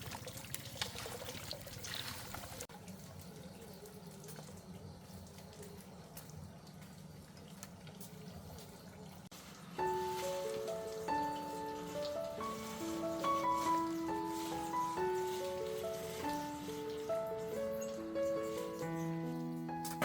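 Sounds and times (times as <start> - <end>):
water drips and clicks: 0.0 - 9.3, 14.0 - 20.0
water running and splashing: 0.0 - 20.0
simple melody music: 9.8 - 20.0.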